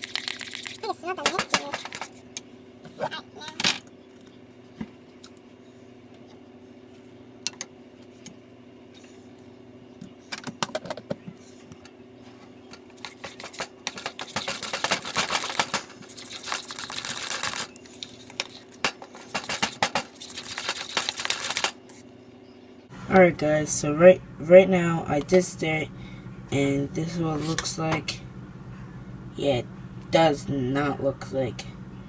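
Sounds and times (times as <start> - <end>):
steady low hum: 0.0 - 32.0
spoon stirring and scraping slime: 12.9 - 22.0
rapid clicking: 13.0 - 21.8.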